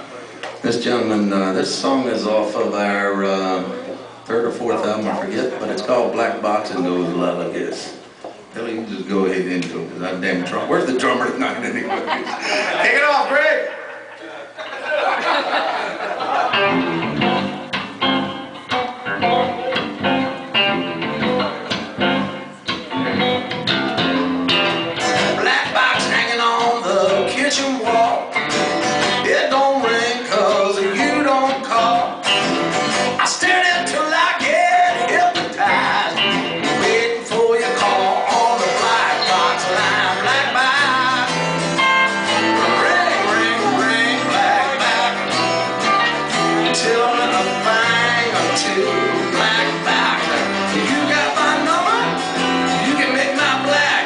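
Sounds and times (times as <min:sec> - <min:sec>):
live rock band playing: 0:16.2 - 0:54.0
electric guitar: 0:16.3 - 0:54.0.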